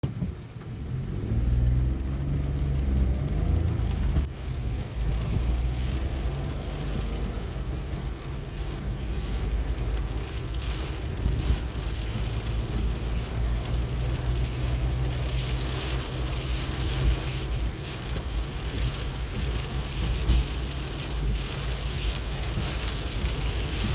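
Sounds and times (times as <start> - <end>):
steady rain hissing: 0.2 - 23.9.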